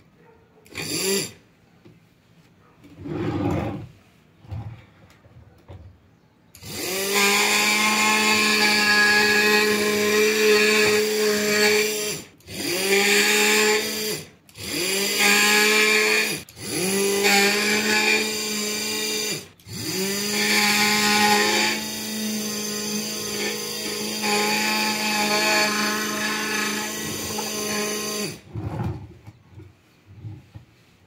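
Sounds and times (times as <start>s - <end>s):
electric motor whining: 6.6s - 28.6s.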